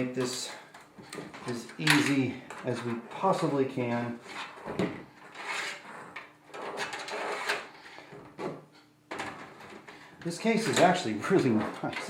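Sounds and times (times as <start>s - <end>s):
cables rubbing and scraping: 1.0s - 7.8s, 10.2s - 12.0s.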